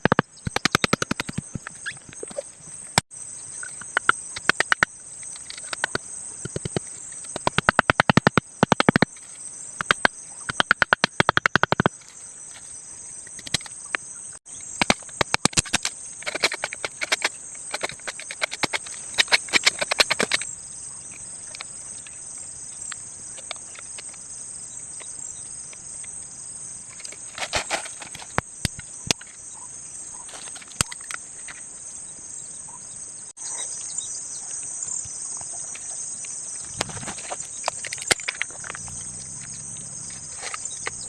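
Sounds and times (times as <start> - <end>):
sharp clicks and knocks: 0.0 - 2.4, 3.7 - 9.2, 9.8 - 12.0, 14.7 - 20.5
insects chorus: 0.0 - 41.0.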